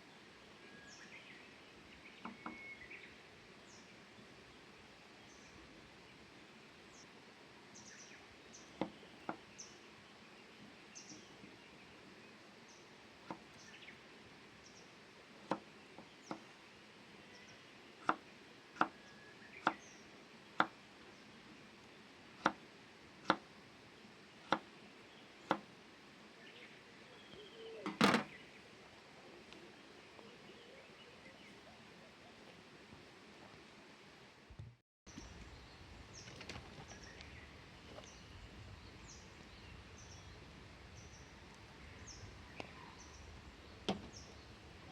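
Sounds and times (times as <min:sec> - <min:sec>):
small birds chirping faintly: 0:00.0 - 0:34.5, 0:35.1 - 0:44.9.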